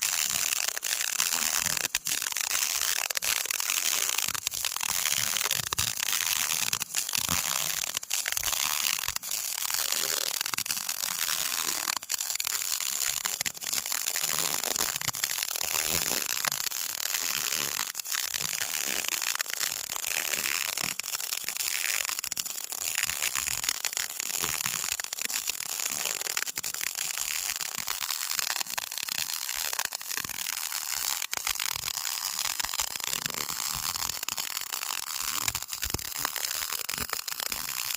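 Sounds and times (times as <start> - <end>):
welding arc crackling and hissing: 0.6 - 13.4, 26.0 - 37.9.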